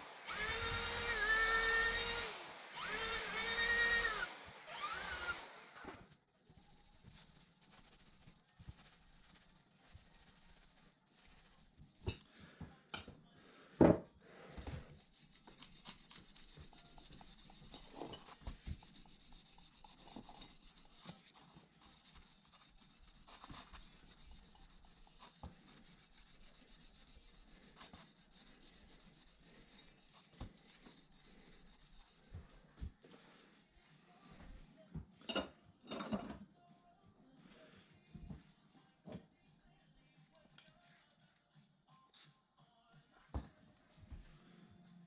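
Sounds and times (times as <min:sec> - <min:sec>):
faint rubbing and scraping: 0:06.1 - 0:12.6, 0:13.6 - 0:34.7.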